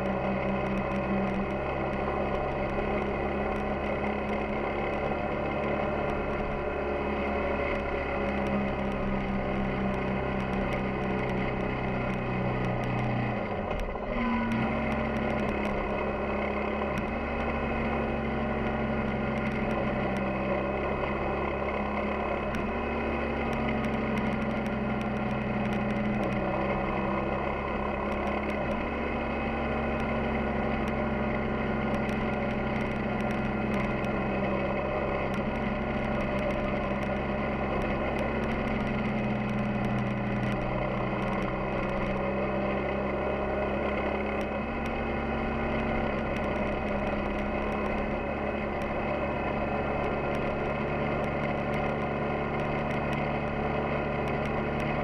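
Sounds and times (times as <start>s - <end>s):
motorcycle engine running: 0.0s - 55.0s
faint ticks: 22.5s - 26.4s, 31.8s - 34.6s, 35.2s - 42.2s.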